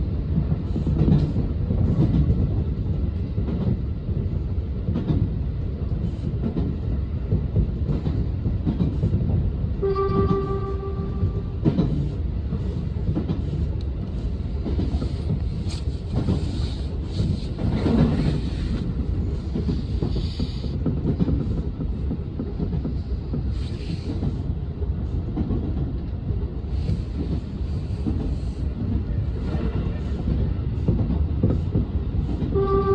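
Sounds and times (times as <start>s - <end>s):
train rumble and rail clatter: 0.0s - 32.9s
train horn: 9.8s - 11.5s, 32.5s - 32.9s.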